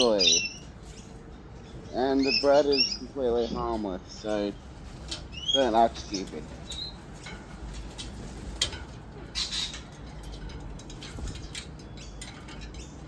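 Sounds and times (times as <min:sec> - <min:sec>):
harsh bird call: 0:00.0 - 0:00.7, 0:01.9 - 0:03.7
beaks and claws tapping: 0:00.2 - 0:13.0.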